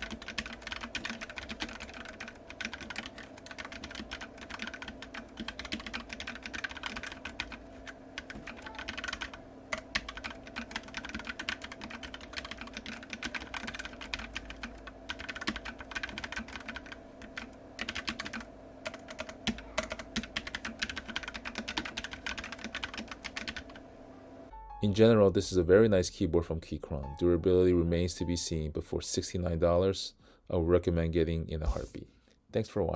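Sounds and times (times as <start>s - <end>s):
keyboard typing clicks: 0.0s - 7.6s, 8.2s - 23.8s
computer fan hum: 0.0s - 32.9s.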